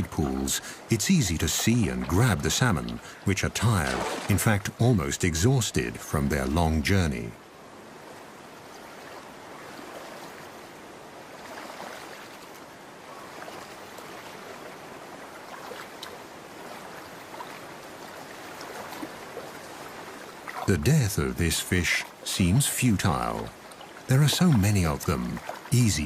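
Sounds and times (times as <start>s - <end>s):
shallow stream running: 0.0s - 26.0s
small water splashes: 0.6s - 4.8s, 7.9s - 26.0s.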